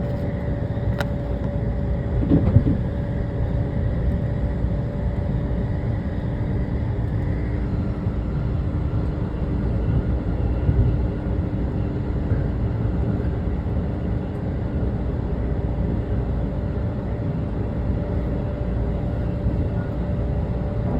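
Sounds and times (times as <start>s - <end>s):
electric train hum: 0.0s - 20.9s
train wheels rumbling on rails: 0.9s - 4.6s, 19.1s - 20.9s.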